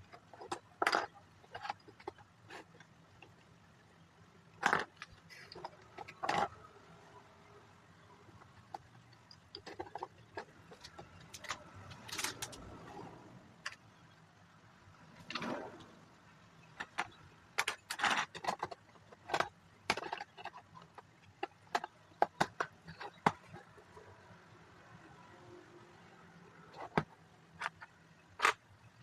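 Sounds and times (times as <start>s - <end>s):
plastic bricks clicking and clattering: 0.0s - 3.8s, 4.4s - 6.7s, 8.2s - 12.8s, 16.6s - 24.0s, 26.5s - 29.0s.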